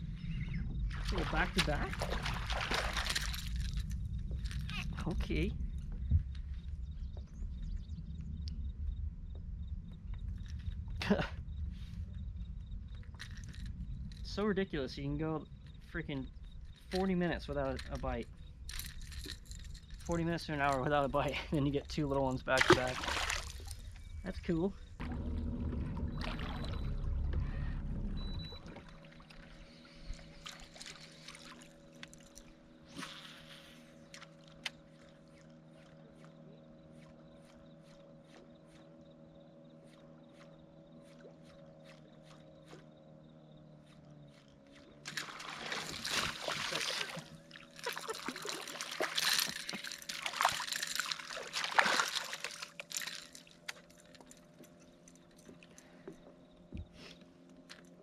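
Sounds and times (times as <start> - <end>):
steady low hum: 0.0 - 58.0
water sloshing and splashing: 0.7 - 5.4, 16.7 - 24.2, 25.0 - 56.7.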